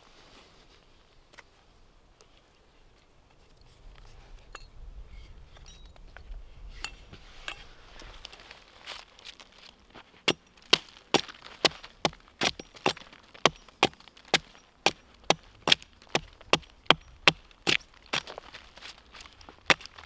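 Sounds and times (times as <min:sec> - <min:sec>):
blade chopping wood: 0:10.2 - 0:18.4, 0:19.6 - 0:20.0.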